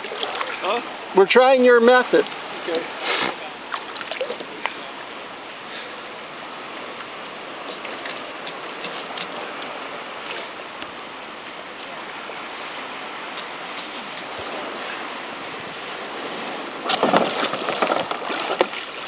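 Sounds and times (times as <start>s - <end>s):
small splashes and ticks: 0.0s - 0.8s, 3.7s - 4.8s, 7.0s - 10.9s, 16.9s - 19.0s
rushing water: 0.0s - 19.0s.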